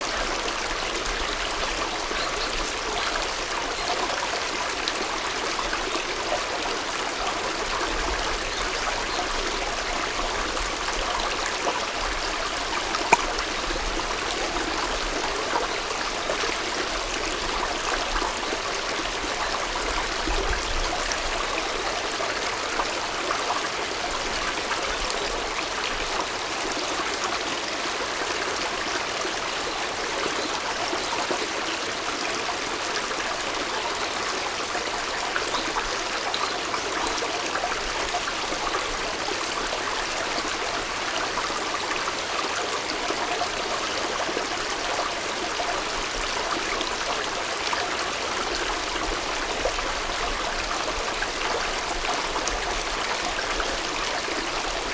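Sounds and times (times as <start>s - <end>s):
stream water rushing: 0.0s - 54.9s.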